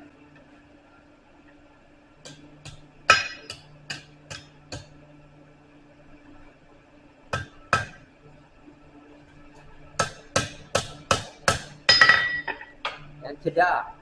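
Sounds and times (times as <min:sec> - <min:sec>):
hammer striking steel on anvil: 0:02.3 - 0:04.8, 0:10.0 - 0:13.0.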